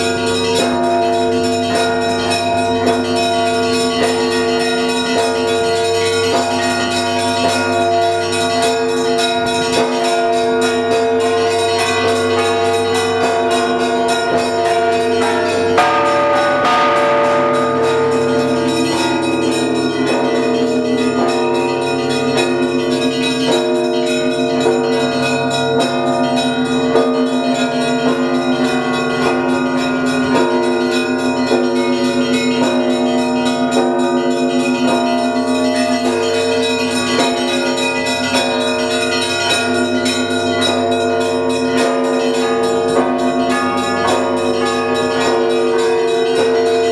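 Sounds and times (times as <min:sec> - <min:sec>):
deep bells ringing: 0:00.0 - 0:46.9
small bells struck quickly: 0:00.0 - 0:46.9
loud bell stroke: 0:06.5 - 0:31.4.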